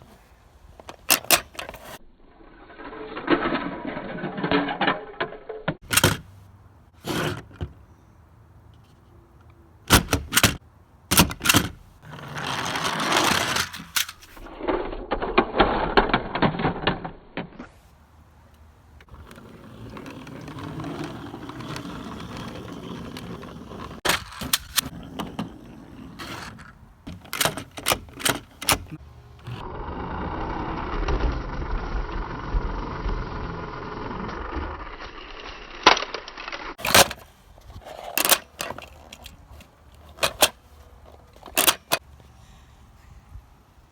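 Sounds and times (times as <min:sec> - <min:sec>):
toys rattling and rustling: 0:00.0 - 0:06.3, 0:11.2 - 0:17.8, 0:19.0 - 0:29.6, 0:34.3 - 0:42.0
toys clicking and clacking: 0:26.2 - 0:29.6, 0:37.8 - 0:42.0.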